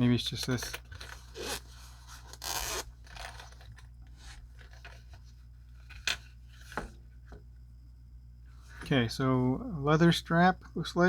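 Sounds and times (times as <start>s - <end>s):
packaging rustling and scraping: 0.6s - 6.9s.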